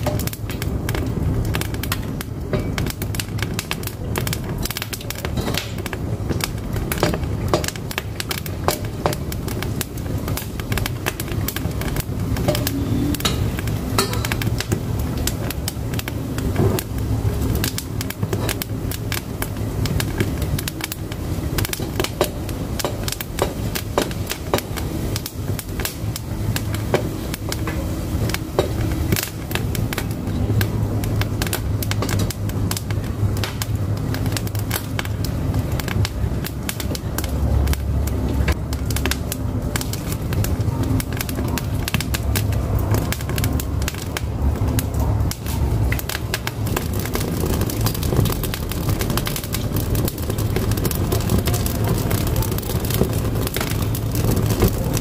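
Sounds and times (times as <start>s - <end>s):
firewood crackling and popping: 0.0s - 55.0s
low fire rumble: 0.0s - 55.0s.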